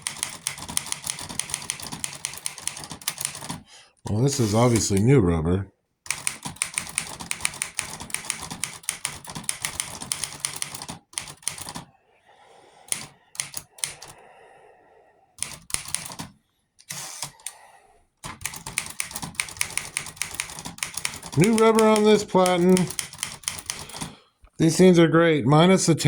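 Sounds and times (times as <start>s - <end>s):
typewriter keys striking: 0.0s - 3.6s, 6.1s - 11.9s, 12.9s - 14.2s, 15.4s - 16.3s, 18.2s - 24.1s.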